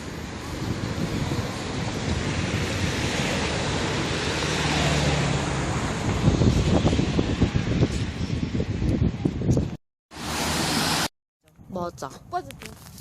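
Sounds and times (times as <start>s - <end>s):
wind buffeting microphone: 0.0s - 9.8s.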